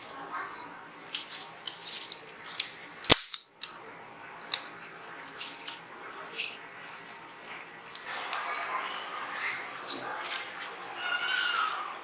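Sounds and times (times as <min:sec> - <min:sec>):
pistol parts clicking: 0:01.0 - 0:03.8, 0:04.4 - 0:05.8
loud sharp metal snap: 0:03.1 - 0:03.7.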